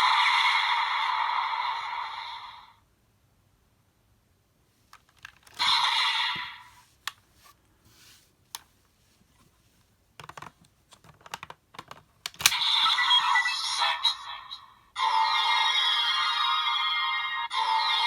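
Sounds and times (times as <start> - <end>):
electronic toy sound effects: 5.6 - 6.8, 12.4 - 18.0
plastic toy clicks and snaps: 11.2 - 12.8.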